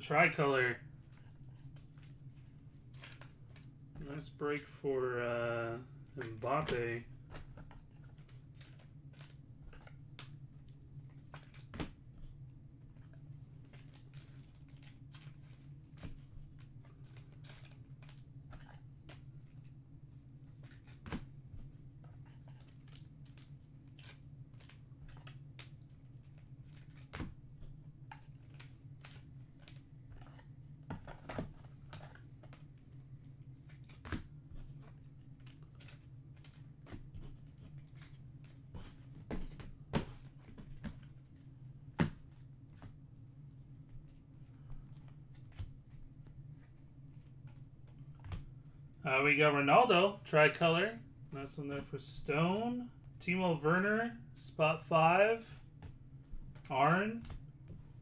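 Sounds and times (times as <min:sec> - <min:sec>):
steady low hum: 0:00.0 - 0:58.0
trading cards clicking and snapping: 0:05.6 - 0:12.0, 0:13.0 - 0:19.3, 0:22.4 - 0:27.4, 0:33.7 - 0:34.3.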